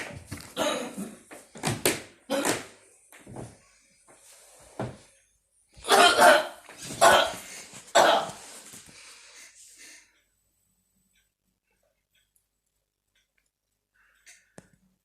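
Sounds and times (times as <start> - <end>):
person coughing: 0.5 - 1.2, 5.8 - 8.4.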